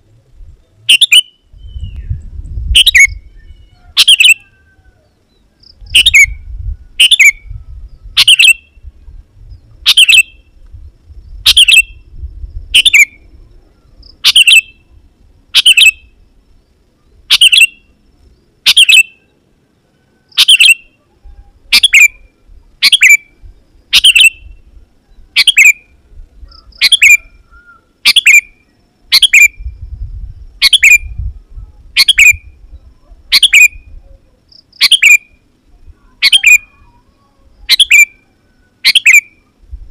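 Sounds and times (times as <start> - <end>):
bulbul calling: 0.8 - 4.8, 5.4 - 8.8, 9.8 - 10.5, 11.4 - 12.1, 12.7 - 14.9, 15.5 - 16.2, 17.1 - 18.0, 18.6 - 19.3, 20.3 - 29.7, 30.6 - 31.2, 31.8 - 39.5.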